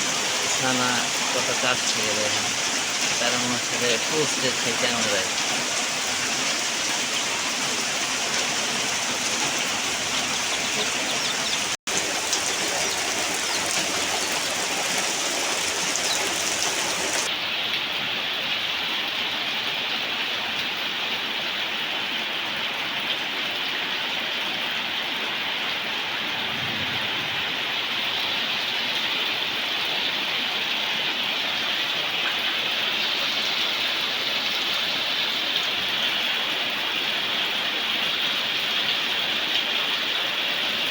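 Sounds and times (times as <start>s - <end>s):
heavy rain hissing: 0.0s - 17.3s.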